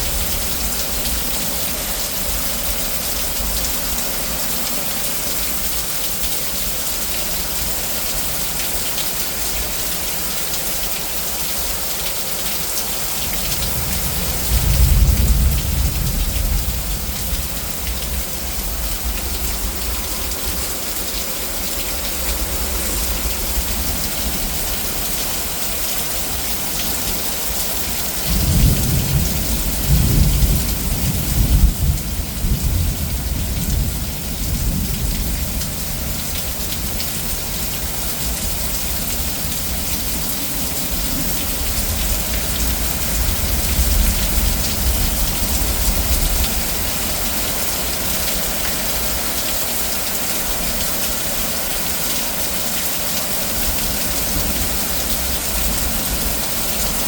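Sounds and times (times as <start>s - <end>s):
heavy rain: 0.0s - 57.0s
thunder rumbling: 13.5s - 20.6s, 28.2s - 47.2s.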